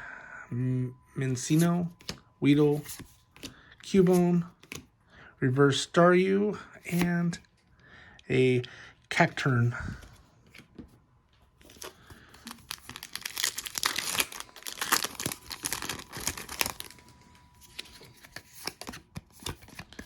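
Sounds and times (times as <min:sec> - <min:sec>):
foil wrapper tearing and crinkling: 0:11.6 - 0:20.0.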